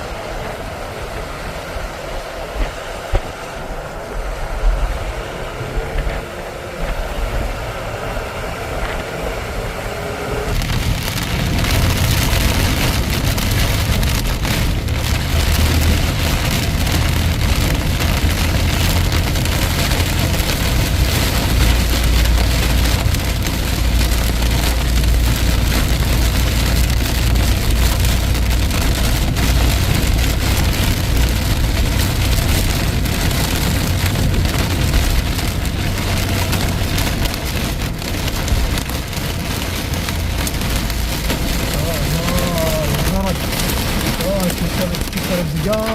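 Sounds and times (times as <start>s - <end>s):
heavy rain and hail pelting: 0.0s - 45.9s
low rumble: 0.0s - 45.9s.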